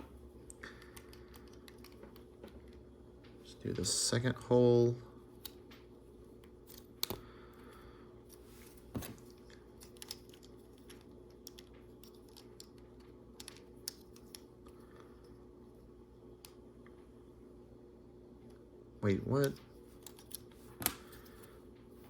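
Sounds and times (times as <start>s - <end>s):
plastic pieces clicking: 9.5s - 14.4s.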